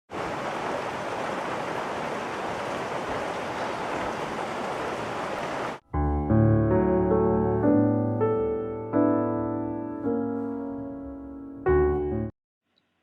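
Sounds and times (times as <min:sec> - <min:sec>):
steady rain: 0:00.1 - 0:05.8
piano music: 0:05.8 - 0:12.3.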